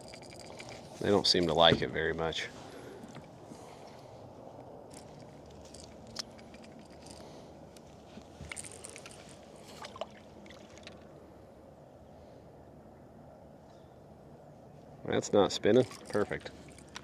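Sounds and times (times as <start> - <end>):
small clicks and splashes: 0.0 - 1.1, 4.9 - 11.1, 15.6 - 17.0.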